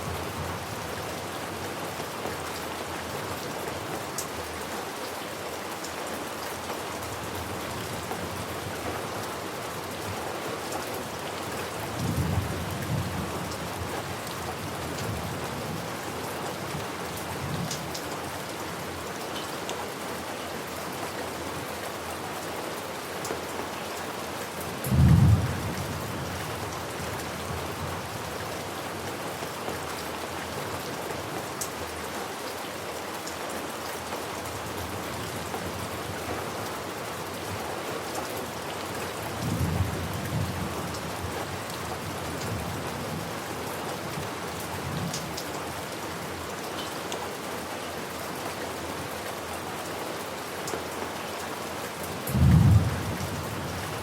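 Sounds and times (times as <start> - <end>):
steady rain falling: 0.0 - 54.0
thunder rumbling: 52.3 - 53.8.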